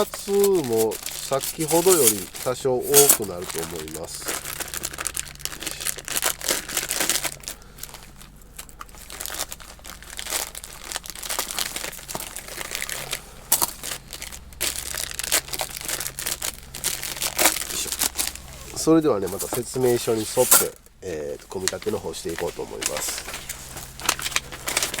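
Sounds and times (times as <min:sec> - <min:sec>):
plastic packaging crinkling: 0:00.0 - 0:25.0.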